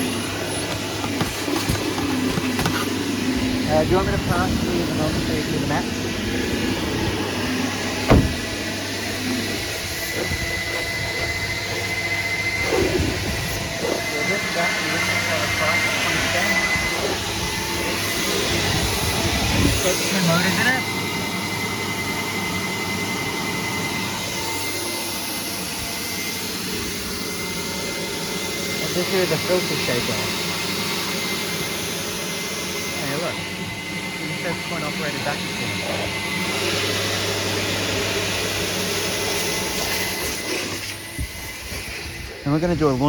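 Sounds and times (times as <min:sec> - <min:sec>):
vacuum rushing air and hum: 0:00.0 - 0:43.0
sharp knock: 0:08.1 - 0:08.5.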